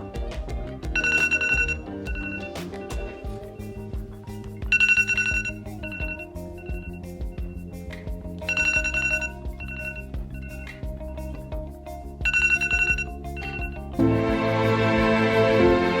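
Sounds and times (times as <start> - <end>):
soft musical backing: 0.0 - 16.0
bell-like ringtone trill: 1.0 - 3.3, 4.7 - 7.0, 8.5 - 10.8, 12.2 - 13.8.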